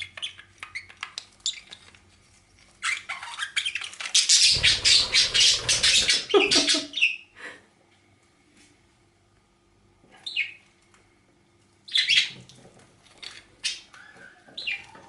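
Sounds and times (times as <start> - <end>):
bird chattering squawky notes: 3.7 - 7.2.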